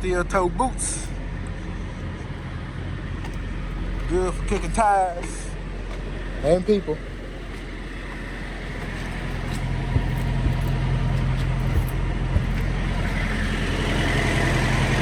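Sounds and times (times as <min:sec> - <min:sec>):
diesel engine running: 0:00.0 - 0:15.0
light knocks: 0:08.8 - 0:13.3.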